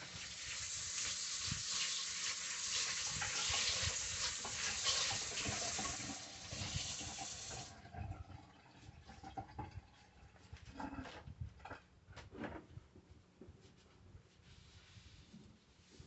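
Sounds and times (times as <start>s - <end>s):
tap water running into sink: 0.0s - 10.0s.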